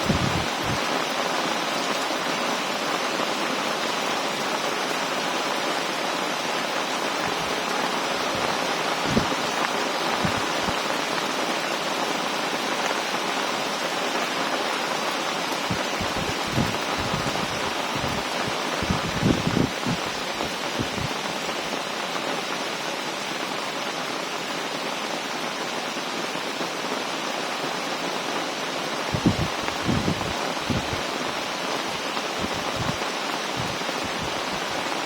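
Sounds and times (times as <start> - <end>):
low thumps: 0.0 - 0.8, 8.4 - 9.3, 10.2 - 10.8, 15.7 - 20.2, 29.2 - 31.0, 33.6 - 34.7
heavy rain hissing: 0.0 - 35.0.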